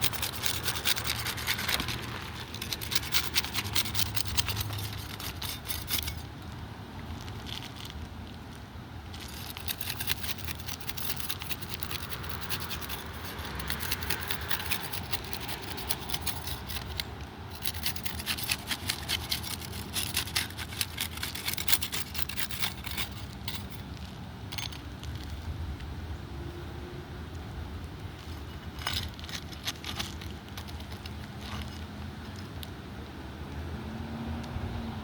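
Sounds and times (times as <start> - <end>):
scraper scraping roof shingles: 0.0 - 6.2, 9.2 - 23.8.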